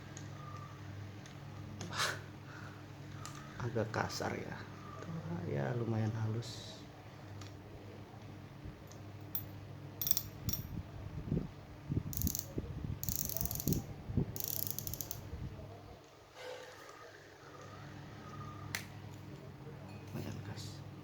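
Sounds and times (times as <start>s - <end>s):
fishing reel gears clicking: 9.4s - 10.7s, 12.2s - 15.2s.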